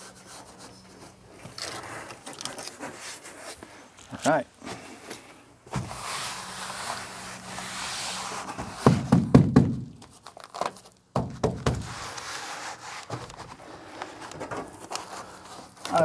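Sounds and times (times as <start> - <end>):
hands rubbing in truck bed: 4.6 - 10.2, 11.5 - 16.0
loud knocks: 8.8 - 9.9, 11.2 - 11.9.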